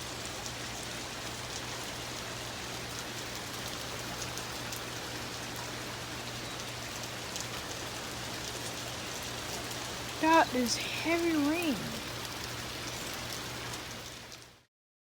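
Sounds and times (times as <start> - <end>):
heavy rain pouring: 0.0 - 14.7.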